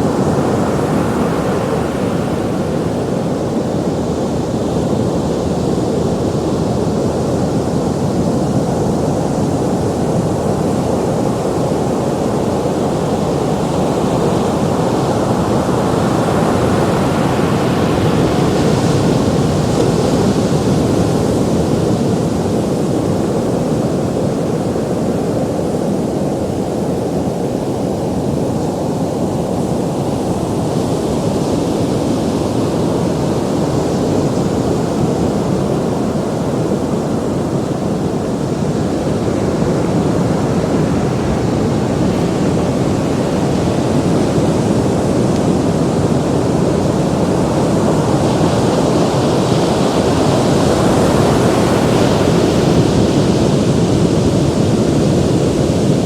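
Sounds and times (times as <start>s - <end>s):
ocean waves breaking: 28.6s - 56.0s.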